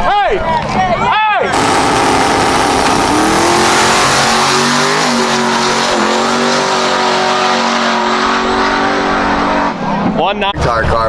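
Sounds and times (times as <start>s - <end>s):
racing car engine at full throttle: 1.5s - 10.2s.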